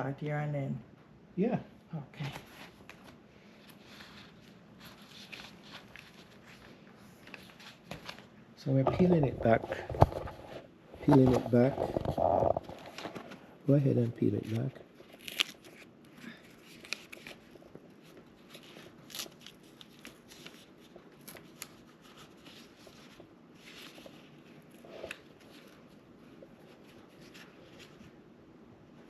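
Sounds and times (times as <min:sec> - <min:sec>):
adhesive patch backing peeled: 0:14.4 - 0:28.1.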